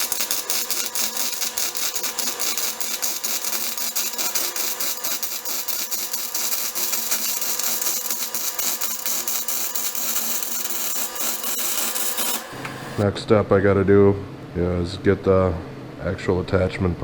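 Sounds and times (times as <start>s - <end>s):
welding arc crackling: 0.0s - 13.0s.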